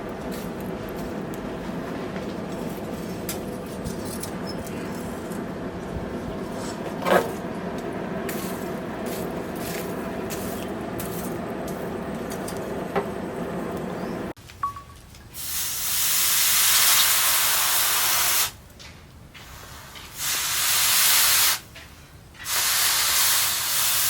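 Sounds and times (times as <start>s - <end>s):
steady machine hum: 0.0s - 14.4s.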